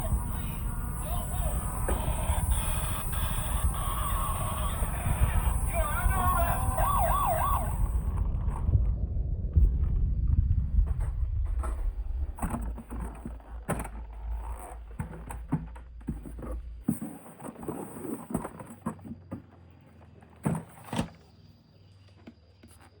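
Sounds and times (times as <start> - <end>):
low rumble: 0.0 - 15.0.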